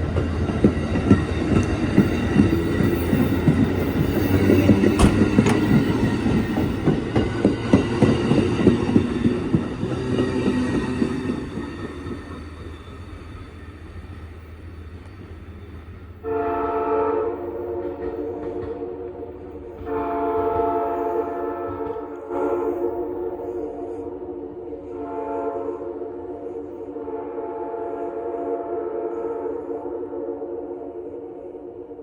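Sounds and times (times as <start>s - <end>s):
train wheels clicking over rail joints: 0.0s - 12.3s.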